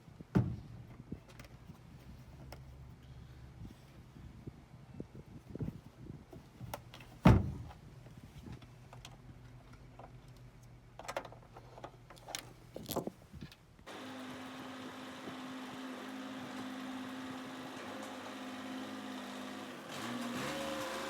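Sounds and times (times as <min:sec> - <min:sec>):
handling knocks and clicks: 0:08.4 - 0:13.6.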